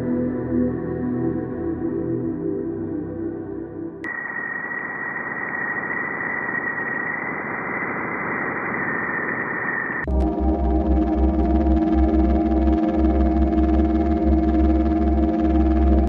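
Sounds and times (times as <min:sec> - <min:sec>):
ambient music: 0:00.0 - 0:04.1, 0:10.0 - 0:16.0
radio static with high whistle: 0:04.1 - 0:10.1
synthesizer music: 0:10.0 - 0:16.0.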